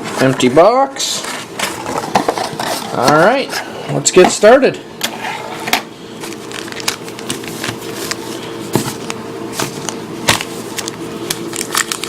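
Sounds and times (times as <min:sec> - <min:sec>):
foil wrappers crinkling: 0:06.2 - 0:12.0.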